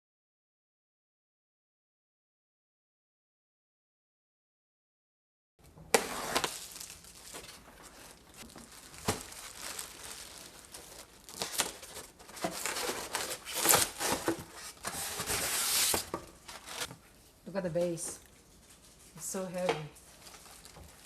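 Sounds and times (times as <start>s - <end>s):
packaging crinkling and rustling: 5.9s - 17.1s, 17.8s - 21.0s.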